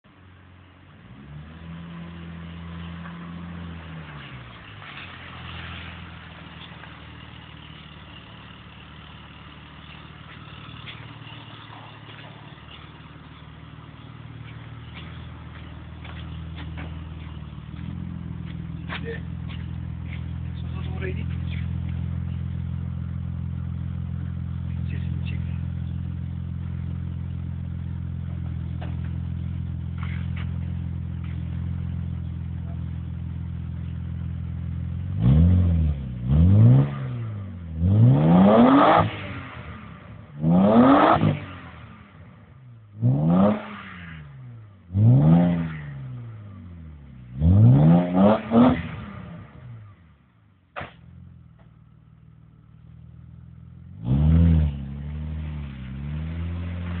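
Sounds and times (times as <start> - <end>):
car engine revving: 0.9 - 50.1, 52.4 - 57.0.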